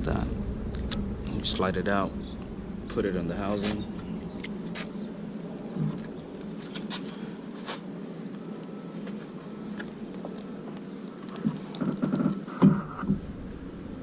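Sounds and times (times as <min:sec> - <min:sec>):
steady background hum: 0:00.0 - 0:14.0.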